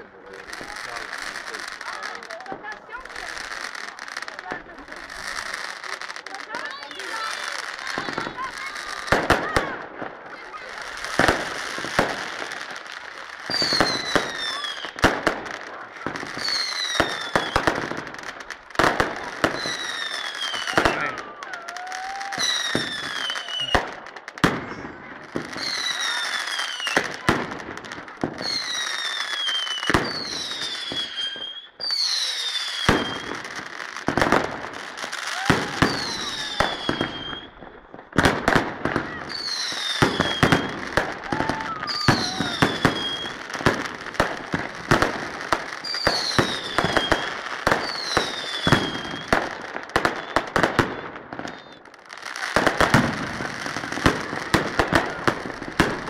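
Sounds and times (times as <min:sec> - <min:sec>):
firework bangs: 0:00.0 - 0:56.0
firework crackle: 0:00.0 - 0:56.0
falling firework whistle: 0:16.4 - 0:17.7, 0:19.5 - 0:24.0, 0:28.4 - 0:33.7, 0:34.9 - 0:37.7, 0:39.2 - 0:43.5, 0:45.7 - 0:56.0.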